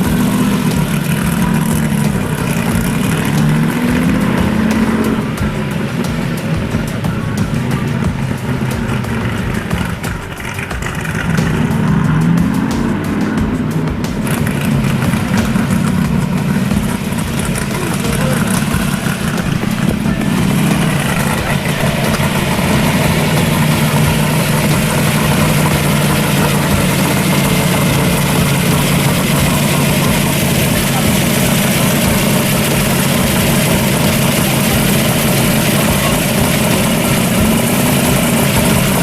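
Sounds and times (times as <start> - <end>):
car engine revving and idling: 0.0 - 39.0.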